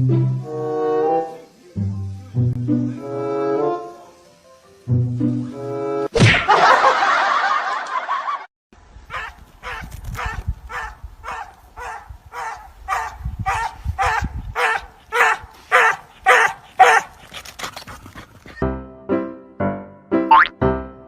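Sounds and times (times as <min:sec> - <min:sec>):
dog barking: 0:09.1 - 0:17.1.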